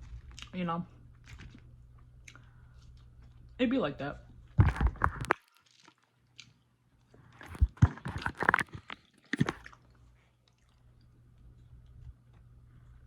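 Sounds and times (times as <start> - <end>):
person biting and chewing: 0.0 - 0.6, 1.2 - 3.4, 4.5 - 6.6, 7.2 - 11.1.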